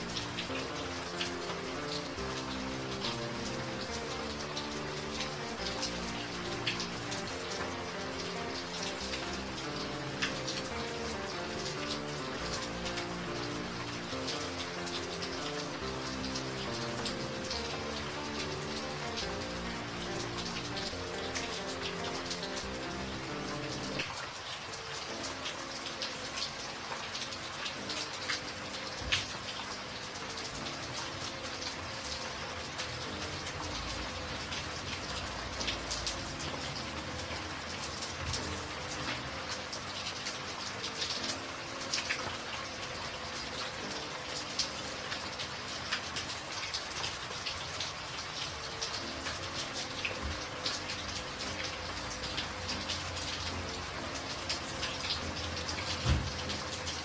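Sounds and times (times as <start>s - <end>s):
raindrops ticking close by: 0.0s - 57.0s
steady rain falling: 0.0s - 57.0s.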